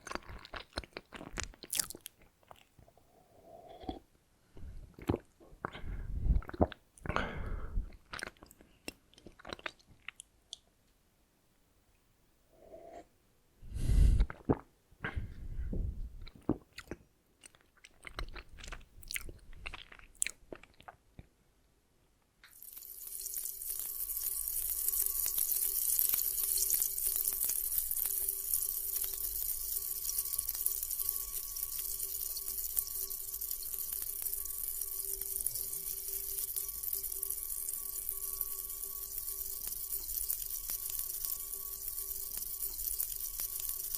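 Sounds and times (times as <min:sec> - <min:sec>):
wet chewing: 0:00.0 - 0:02.9, 0:07.9 - 0:10.6, 0:16.2 - 0:21.0
faint steady hum: 0:02.8 - 0:08.1, 0:21.8 - 0:43.9.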